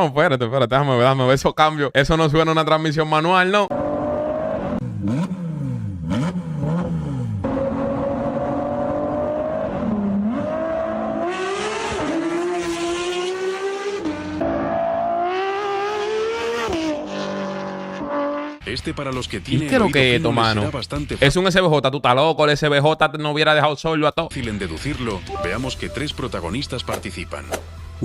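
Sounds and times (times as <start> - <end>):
sports car engine revving: 3.7 - 18.6.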